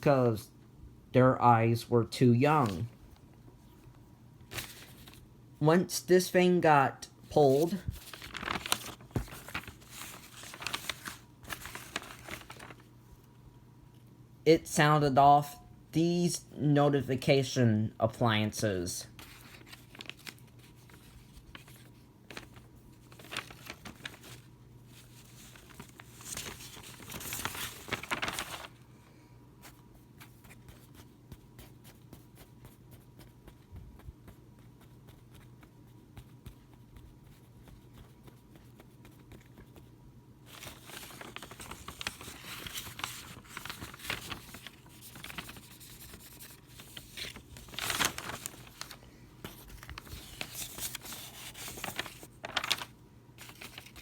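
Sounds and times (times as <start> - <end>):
low electrical hum: 0.0 - 54.0
rustling and crinkling handling: 2.5 - 5.3, 7.2 - 14.1, 19.0 - 32.1, 38.9 - 54.0.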